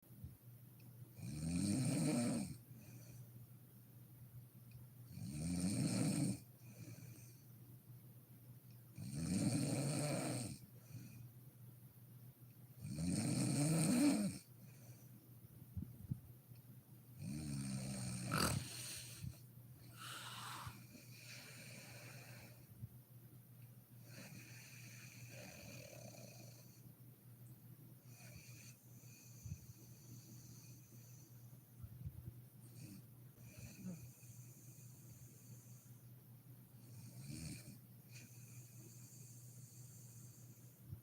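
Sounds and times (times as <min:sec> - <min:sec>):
woman snoring: 0:01.2 - 0:02.6, 0:05.2 - 0:06.4, 0:09.0 - 0:10.6, 0:12.8 - 0:14.5, 0:17.2 - 0:22.6, 0:24.1 - 0:26.8, 0:33.4 - 0:34.2
faint breath: 0:14.6 - 0:15.3, 0:18.3 - 0:22.9, 0:24.0 - 0:25.8, 0:28.0 - 0:31.8, 0:33.4 - 0:36.2, 0:38.0 - 0:41.0.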